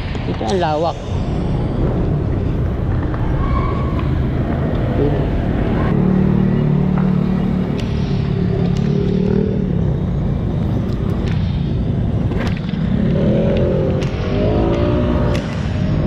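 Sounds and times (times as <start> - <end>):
vehicle engine running: 4.1 - 16.0.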